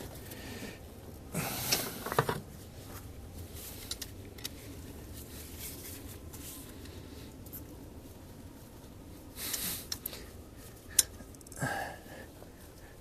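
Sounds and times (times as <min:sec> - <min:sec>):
light clicks and scrapes: 0:01.7 - 0:11.6.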